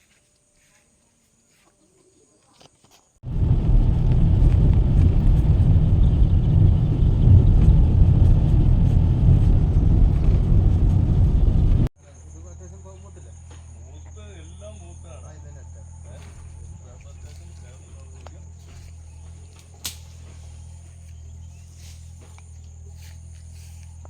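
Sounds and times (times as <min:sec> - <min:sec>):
loud low rumbling: 0:03.2 - 0:11.9.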